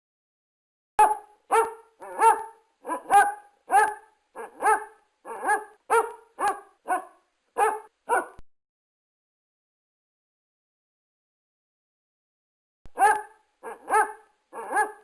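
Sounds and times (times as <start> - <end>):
dog barking: 1.0 - 8.4, 12.9 - 15.0.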